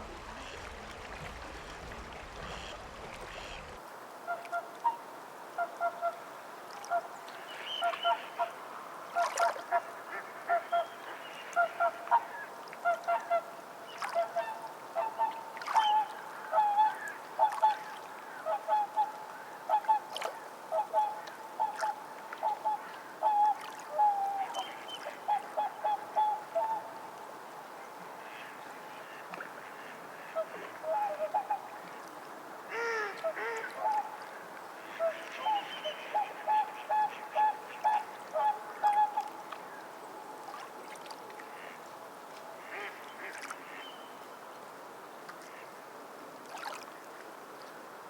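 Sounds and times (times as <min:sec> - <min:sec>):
waterfowl honking: 0:02.3 - 0:03.8, 0:32.7 - 0:34.0.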